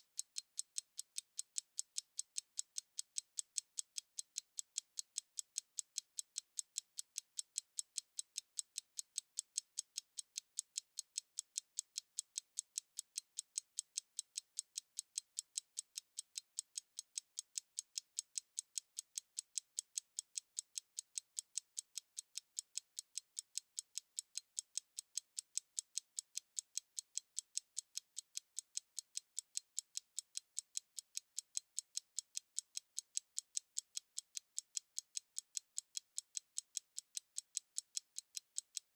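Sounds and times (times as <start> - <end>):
stopwatch ticking: 0.0 - 38.9.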